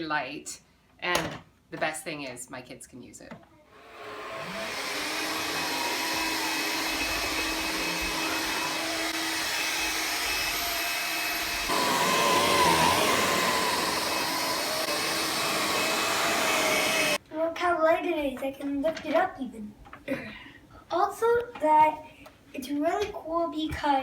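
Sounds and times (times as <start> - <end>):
cordless vacuum cleaner running: 3.8 - 17.2.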